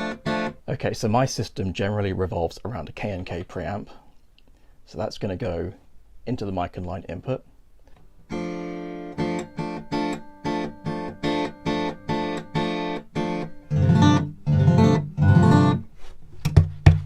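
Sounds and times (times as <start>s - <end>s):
acoustic guitar chords: 0.0s - 0.7s, 8.3s - 16.0s
percussive knocks on guitar: 16.4s - 17.0s.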